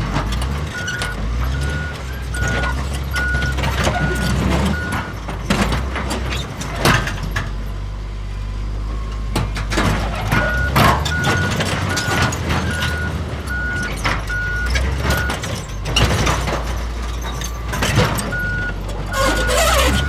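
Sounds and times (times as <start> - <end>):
bulldozer diesel engine running: 0.0 - 20.0
reversing alarm beeping: 0.7 - 3.6, 10.5 - 15.4, 18.3 - 20.0.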